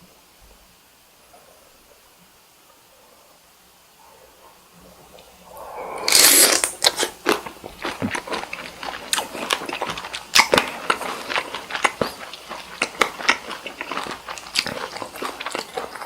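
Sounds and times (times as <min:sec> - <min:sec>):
loud bite: 0:05.5 - 0:16.0
wet chewing clicks: 0:06.1 - 0:16.0.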